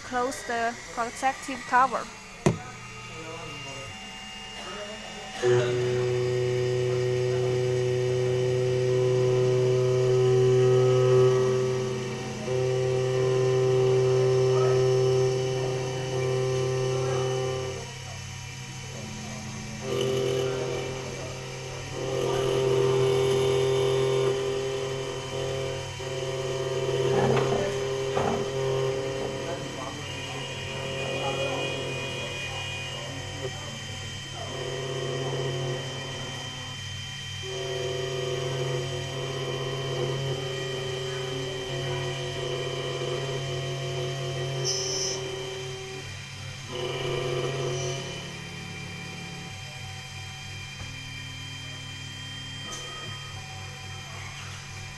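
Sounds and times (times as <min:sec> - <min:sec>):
key cutting machine motor whine: 0:00.0 - 0:54.9
milling cutter cutting key blank: 0:05.4 - 0:46.0
short high squeal: 0:44.6 - 0:45.2.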